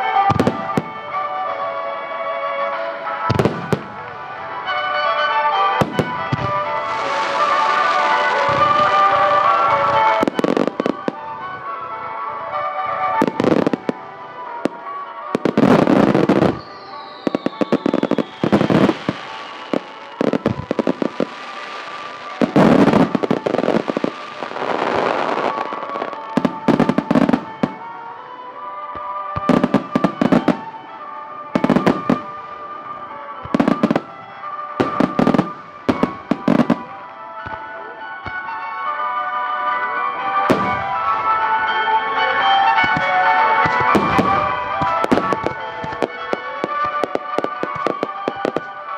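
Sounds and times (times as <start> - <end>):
firework falling whistle: 0.0 - 1.5, 2.5 - 38.7, 40.0 - 48.9
background music: 0.0 - 48.9
fireworks bangs: 0.0 - 48.9
fireworks crackling: 0.0 - 48.9.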